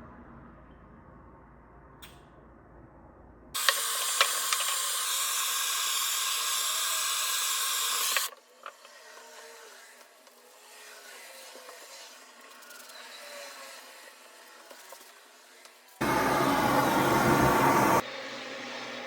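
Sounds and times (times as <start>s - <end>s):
loud steady hiss: 16.0s - 18.0s.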